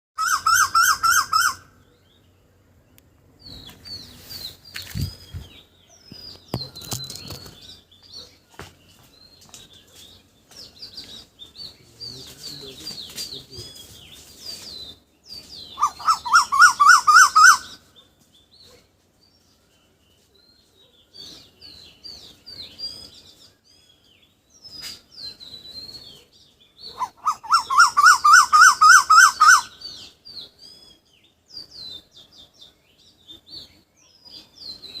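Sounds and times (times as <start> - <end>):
loud rapid pulsed bird call: 0.2 - 1.9, 15.6 - 17.8, 26.8 - 30.2
soft high bird chirps: 0.2 - 35.0.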